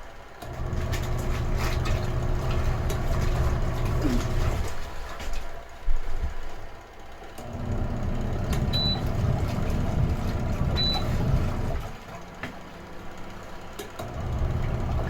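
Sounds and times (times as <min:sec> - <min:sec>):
low mechanical rumble: 0:07.4 - 0:12.0, 0:12.9 - 0:15.0.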